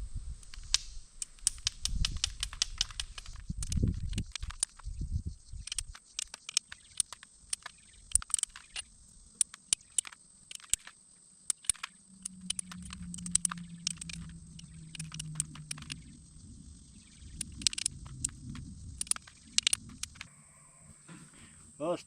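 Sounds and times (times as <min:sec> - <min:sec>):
low hum: 0:06.8 - 0:21.6.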